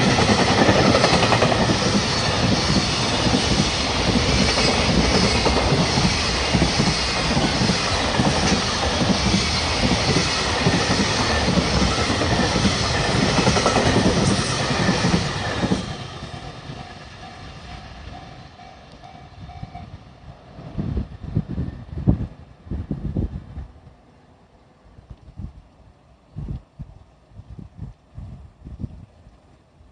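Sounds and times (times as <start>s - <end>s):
train wheels clacking over rails: 0.0s - 19.8s
level crossing warning bell: 16.7s - 20.0s.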